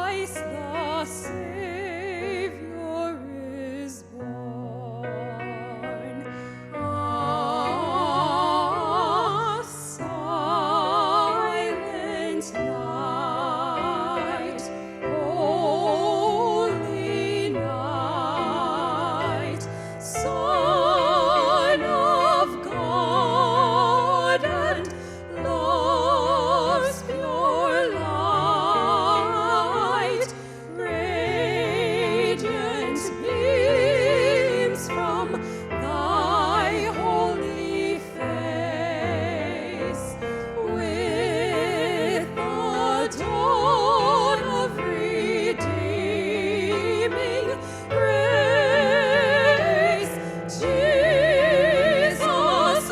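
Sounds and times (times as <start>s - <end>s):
classical melody with vibrato: 0.0s - 52.9s.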